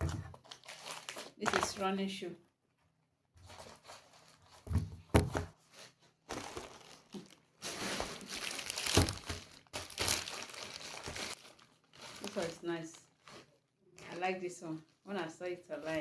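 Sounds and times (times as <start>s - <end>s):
packaging crinkling: 0.3s - 1.8s, 5.6s - 14.1s.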